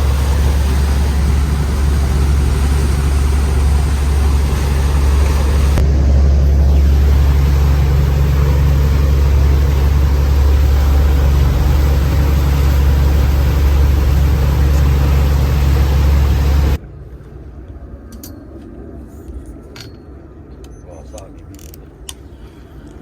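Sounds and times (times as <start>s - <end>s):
water noise: 0.0s - 16.8s
boat engine drone: 0.0s - 17.2s
rushing wind: 0.0s - 20.5s.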